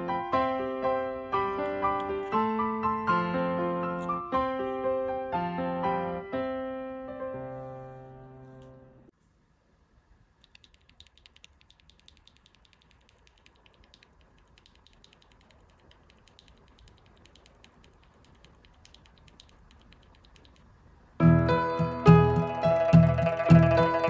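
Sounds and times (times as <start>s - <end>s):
mechanical keyboard typing: 10.4s - 20.7s
plucked-string music: 21.2s - 24.0s.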